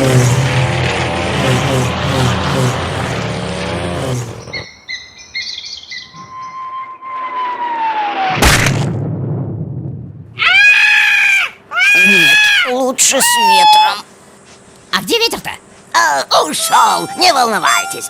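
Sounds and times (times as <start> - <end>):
loud crash: 0.0 - 4.7, 8.2 - 10.2
machine engine running: 0.0 - 4.7
long falling whistle: 6.2 - 8.4.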